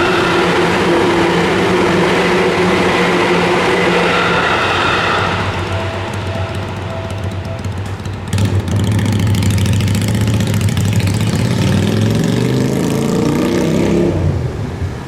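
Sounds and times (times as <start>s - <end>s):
vehicle motor pulling away: 5.2s - 14.2s.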